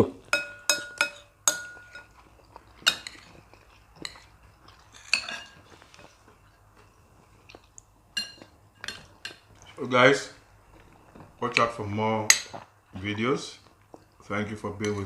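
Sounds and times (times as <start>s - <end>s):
cutlery clinking against plates: 0.3s - 2.2s, 2.8s - 3.4s, 4.0s - 6.1s, 8.2s - 9.7s.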